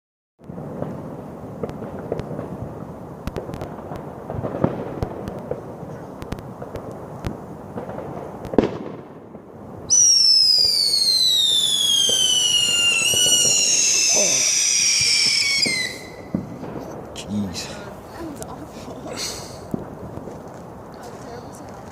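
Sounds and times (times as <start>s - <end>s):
fireworks crackling and popping: 0.4s - 21.9s
high falling firework whistle: 9.9s - 16.4s.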